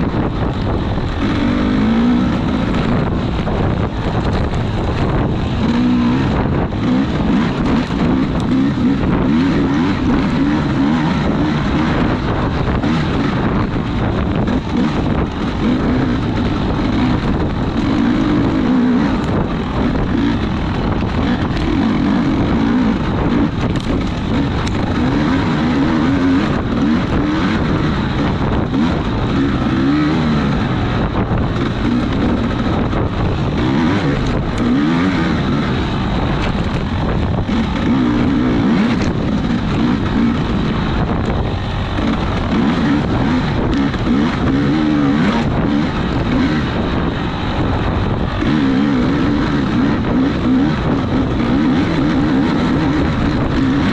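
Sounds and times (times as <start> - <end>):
racing vehicle engine revving: 0.0 - 53.9.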